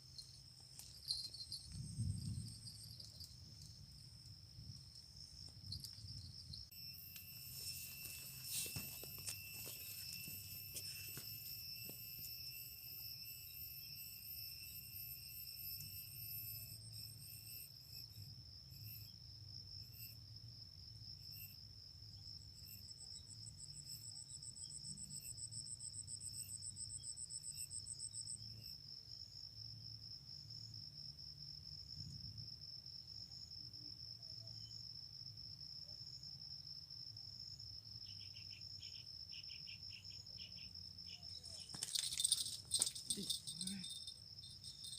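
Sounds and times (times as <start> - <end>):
insects trilling: 0.0 - 44.9.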